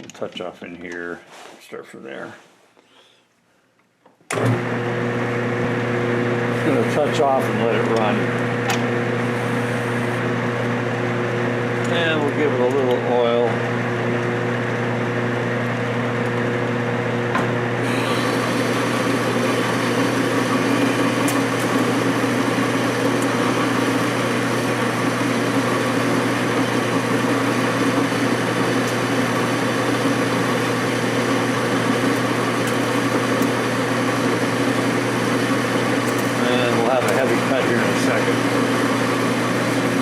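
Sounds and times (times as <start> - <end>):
lathe humming: 4.3 - 16.5, 17.4 - 40.0
cutting tool hissing: 9.2 - 10.2, 17.8 - 40.0.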